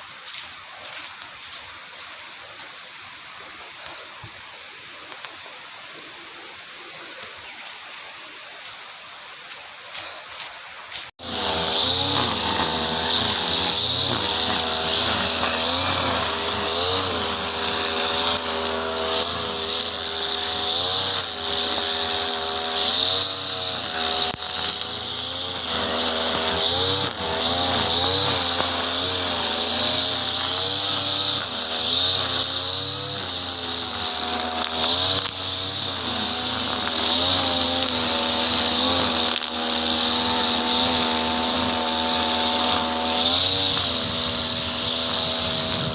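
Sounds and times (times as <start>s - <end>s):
small engine revving: 11.0s - 45.9s.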